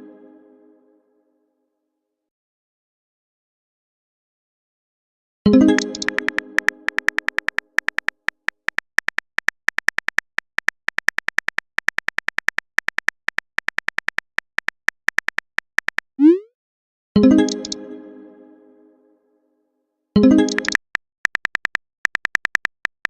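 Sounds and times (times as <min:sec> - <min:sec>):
keyboard tap clicks with beeps: 0:05.6 - 0:16.5, 0:17.4 - 0:17.8, 0:20.4 - 0:23.0.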